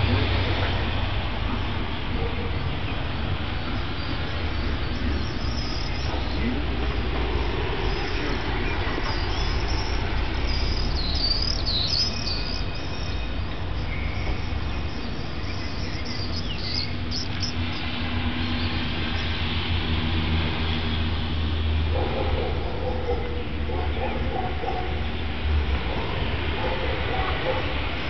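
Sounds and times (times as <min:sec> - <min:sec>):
birds chirping: 0:00.0 - 0:19.5.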